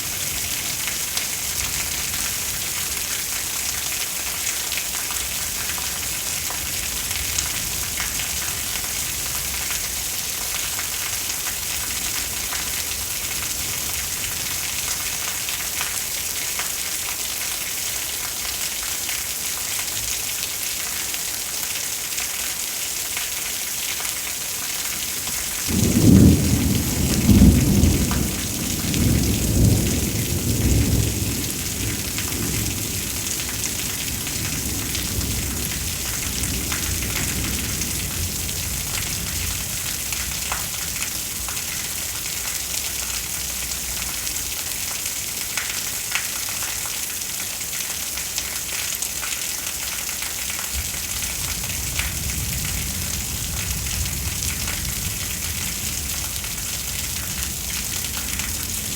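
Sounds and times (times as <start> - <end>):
thunder rumbling: 25.7 - 41.5, 50.8 - 58.9
heavy rain hissing: 50.8 - 58.9.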